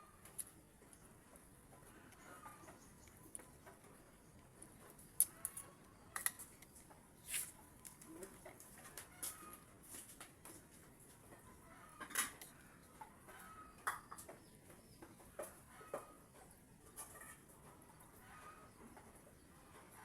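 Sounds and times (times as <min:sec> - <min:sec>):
chickens clucking: 0:00.0 - 0:20.0
clinks of utensils and dishes: 0:12.0 - 0:12.4.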